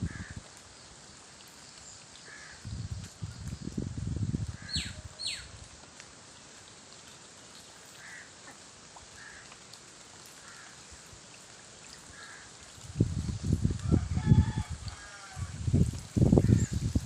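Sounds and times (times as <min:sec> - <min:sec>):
faint steady hiss: 0:00.0 - 0:17.0
birds calling: 0:04.6 - 0:05.5.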